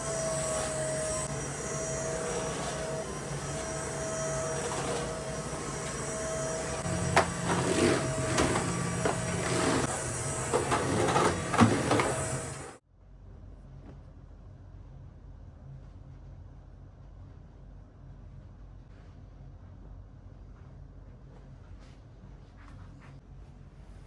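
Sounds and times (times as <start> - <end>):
mechanical whirr: 0.0 - 12.8
items clinking and knocking: 6.8 - 12.7.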